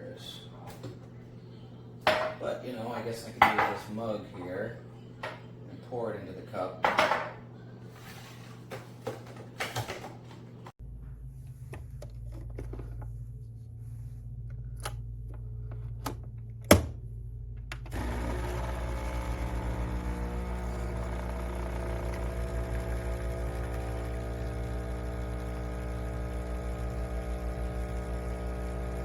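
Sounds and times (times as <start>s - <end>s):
espresso machine low hum: 10.5s - 29.0s
pump buzzing: 17.9s - 29.0s
espresso machine clicks: 18.0s - 29.0s.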